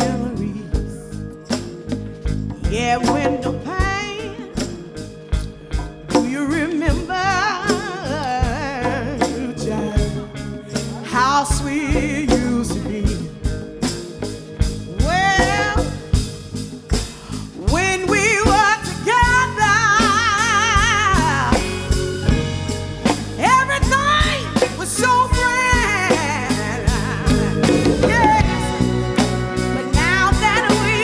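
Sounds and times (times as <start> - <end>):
wordless vocal with vibrato: 0.0 - 1.3, 2.6 - 4.8, 6.1 - 13.8, 14.9 - 16.4, 17.0 - 21.9, 23.4 - 29.2, 29.8 - 31.0
bass line: 0.0 - 31.0
drums steady beat: 0.0 - 31.0.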